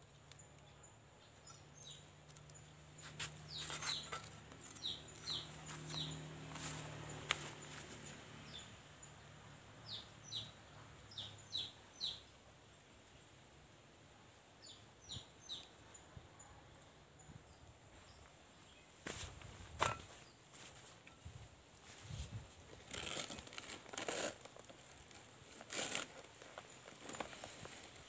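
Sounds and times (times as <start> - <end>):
bird chirping: 0.0 - 12.4.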